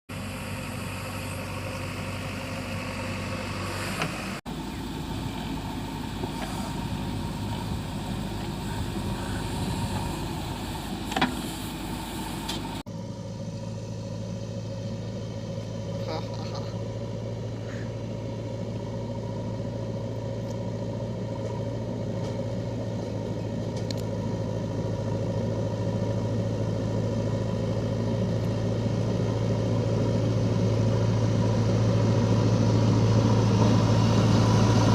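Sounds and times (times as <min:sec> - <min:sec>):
heavy machinery diesel engine: 0:00.1 - 0:34.9.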